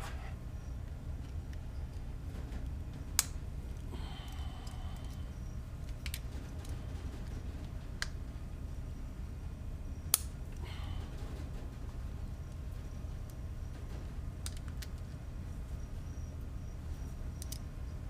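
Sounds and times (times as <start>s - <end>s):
steady low hum: 0.0s - 18.0s
allen key metal clicks: 17.4s - 17.7s.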